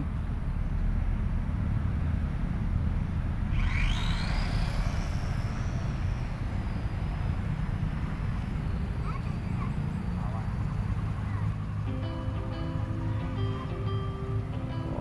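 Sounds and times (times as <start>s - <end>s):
steady low rumble: 0.0s - 15.0s
model plane motor whine: 3.5s - 11.7s.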